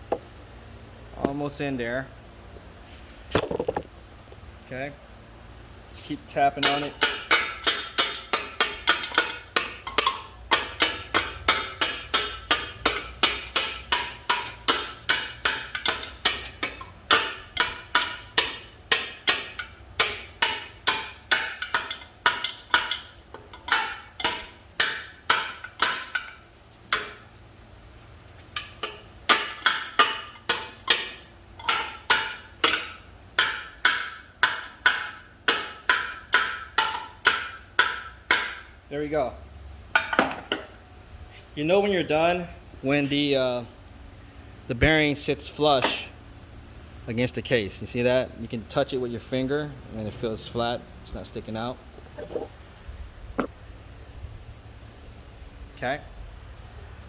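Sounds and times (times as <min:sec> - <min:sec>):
hammer tapping metal punch: 0:06.5 - 0:27.3, 0:28.6 - 0:38.7.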